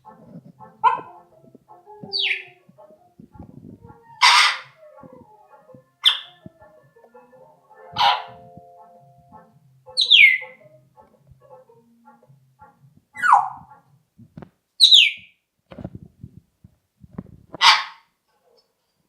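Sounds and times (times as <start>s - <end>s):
parrot whistling: 2.1s - 2.6s, 6.0s - 6.4s, 9.9s - 10.7s
harsh parrot call: 3.9s - 4.8s, 9.9s - 10.7s.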